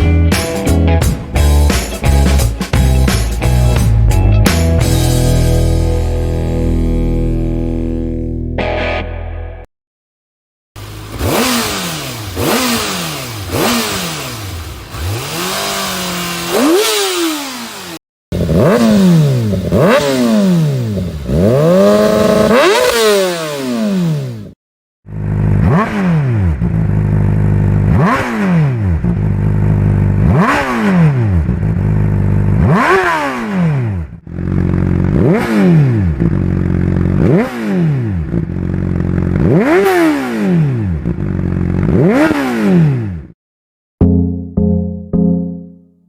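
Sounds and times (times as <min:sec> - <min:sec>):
motorcycle engine revving: 0:10.8 - 0:43.4.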